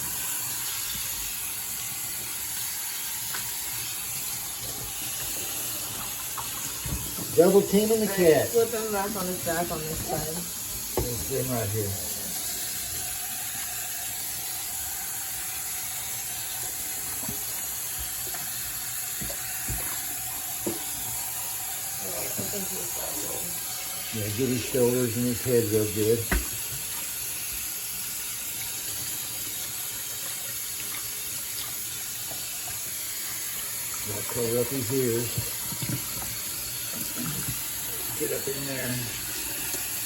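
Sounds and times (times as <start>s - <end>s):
tap water running into sink: 0.0s - 40.0s
knocks in sink: 26.2s - 26.6s.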